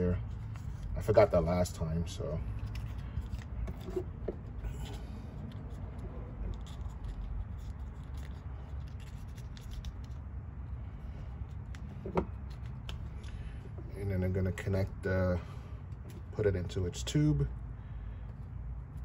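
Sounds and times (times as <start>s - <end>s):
steady low rumble: 0.0s - 19.0s
faint scratching of hands on wiring: 2.2s - 10.3s, 11.0s - 14.0s.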